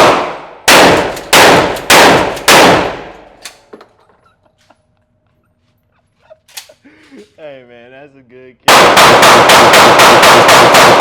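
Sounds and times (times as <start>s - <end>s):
gunshots with ringing echo: 0.0s - 3.4s, 8.7s - 11.0s.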